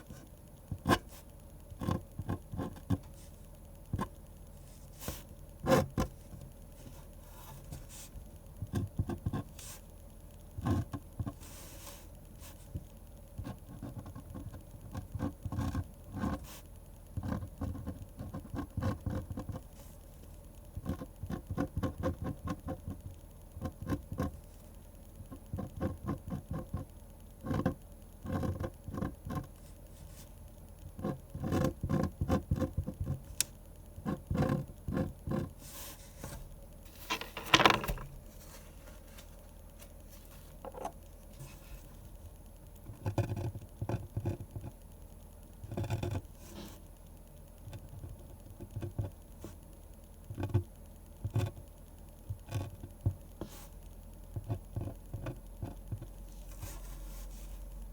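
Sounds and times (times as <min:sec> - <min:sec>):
pen scratching on paper: 0:01.8 - 0:03.3, 0:13.4 - 0:16.6, 0:17.2 - 0:19.9, 0:20.8 - 0:23.0, 0:23.6 - 0:24.4, 0:27.5 - 0:30.2, 0:30.9 - 0:33.3, 0:34.0 - 0:36.4, 0:45.7 - 0:46.8.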